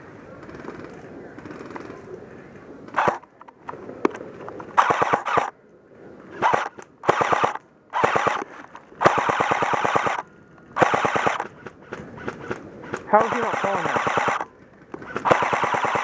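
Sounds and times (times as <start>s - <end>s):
airsoft rifle bursts: 4.8s - 5.5s, 6.4s - 16.0s.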